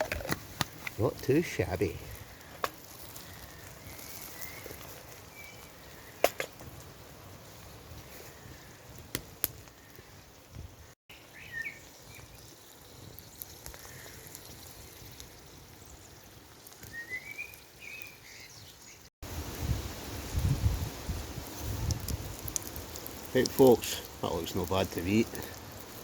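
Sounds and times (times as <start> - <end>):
birds chirping: 0.0 - 6.4, 9.6 - 19.1.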